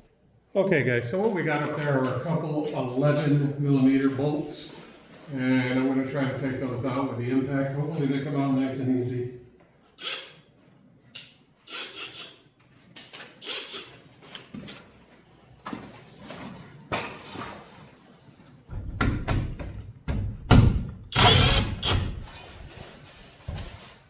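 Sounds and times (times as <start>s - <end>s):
impact wrench running: 10.0s - 10.4s, 11.7s - 12.4s, 13.4s - 14.0s, 21.1s - 22.4s.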